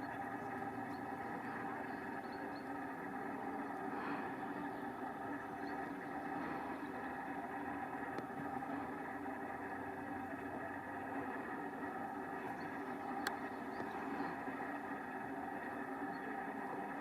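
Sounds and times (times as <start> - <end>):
engine running steadily: 0.0 - 17.0.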